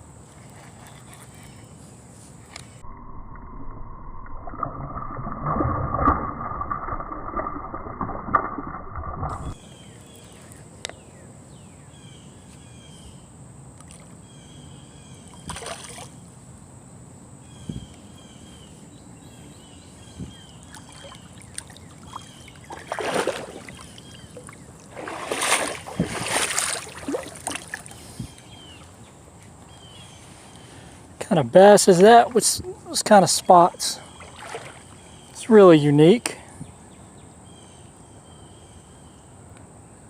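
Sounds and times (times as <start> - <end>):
water splashing: 2.8 - 9.6, 20.7 - 28.0, 31.9 - 35.1.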